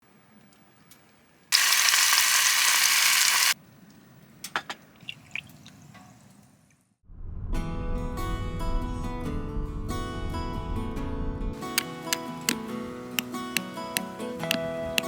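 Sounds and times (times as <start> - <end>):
food sizzling in hot oil: 1.5 - 3.6.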